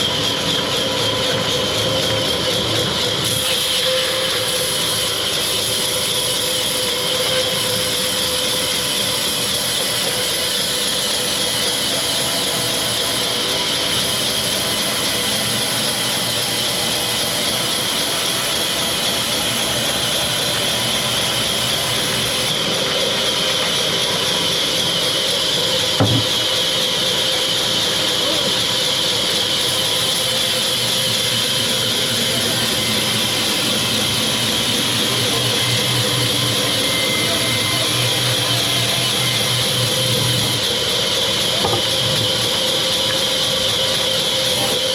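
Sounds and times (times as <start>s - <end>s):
sawmill machinery whining: 0.0s - 44.9s
single knock: 26.0s - 26.3s.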